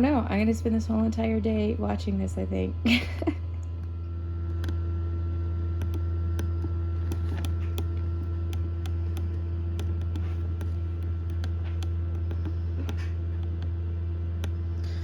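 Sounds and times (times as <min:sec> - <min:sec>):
incubator humming: 0:00.0 - 0:15.0
small sharp clicks: 0:04.5 - 0:04.8, 0:05.8 - 0:13.8.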